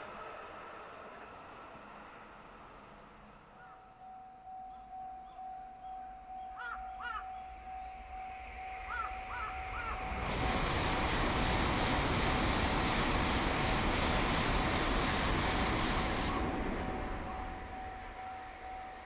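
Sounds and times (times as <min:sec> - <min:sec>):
crows cawing: 0:06.6 - 0:07.4, 0:08.9 - 0:10.0
loud even rushing noise: 0:08.8 - 0:18.2.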